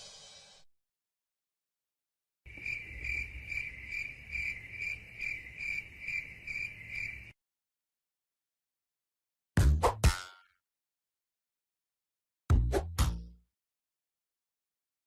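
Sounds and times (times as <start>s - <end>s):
crickets chirping: 2.5s - 7.4s.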